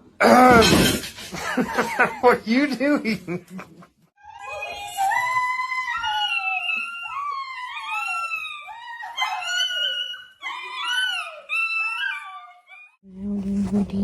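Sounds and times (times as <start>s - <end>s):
dog howling and whining: 4.2s - 13.0s.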